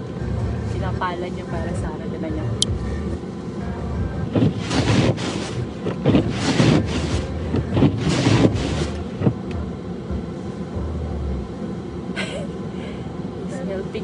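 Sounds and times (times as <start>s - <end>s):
snow shovel scraping packed snow: 4.3s - 9.3s.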